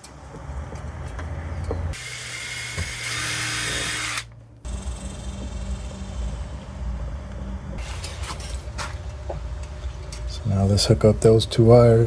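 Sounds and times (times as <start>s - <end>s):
power drill running: 1.9s - 5.0s.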